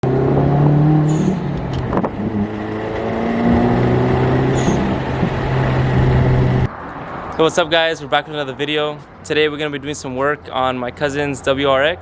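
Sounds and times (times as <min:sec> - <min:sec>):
car engine revving: 0:00.0 - 0:06.7
high chirps: 0:01.1 - 0:01.4, 0:04.4 - 0:05.0.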